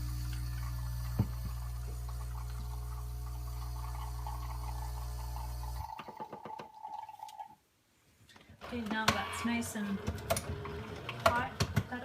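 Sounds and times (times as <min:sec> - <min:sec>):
espresso machine pump humming: 0:00.0 - 0:06.2
coffee dripping: 0:00.0 - 0:07.6
coffee pouring into a cup: 0:00.0 - 0:07.6.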